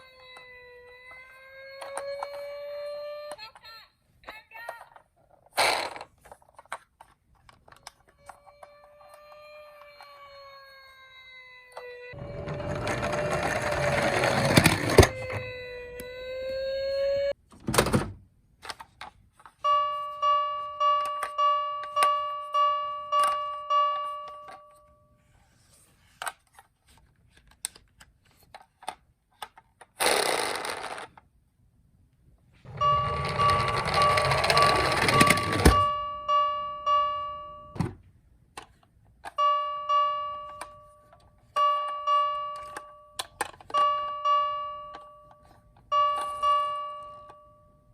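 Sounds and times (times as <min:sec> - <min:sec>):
toy wailing siren: 0:00.0 - 0:03.6, 0:07.9 - 0:17.4, 0:32.7 - 0:36.2
rattling noise: 0:12.2 - 0:15.5, 0:32.7 - 0:35.9.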